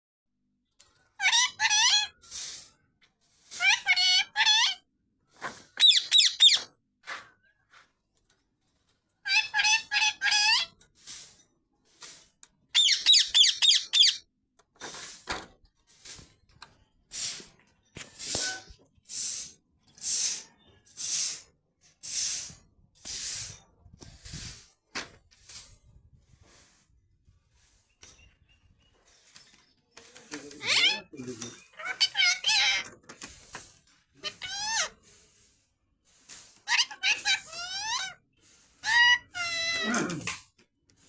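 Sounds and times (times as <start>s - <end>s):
parrot squawking: 1.2s - 2.2s, 5.8s - 6.7s, 9.3s - 10.7s, 12.8s - 14.2s, 30.6s - 31.1s, 31.7s - 32.8s, 34.2s - 34.9s, 36.6s - 38.2s, 38.8s - 40.3s.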